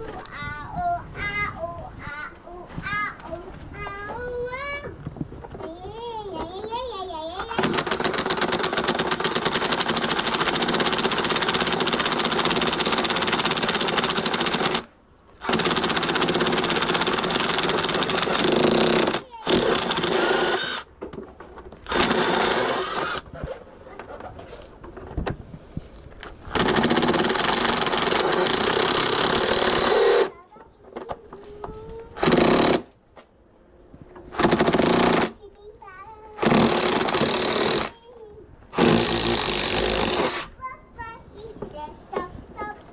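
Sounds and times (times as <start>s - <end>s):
power tool buzzing rattle: 7.6s - 20.9s, 21.8s - 23.3s, 26.5s - 30.3s, 32.2s - 32.9s, 34.3s - 35.4s, 36.4s - 38.0s, 38.8s - 40.5s.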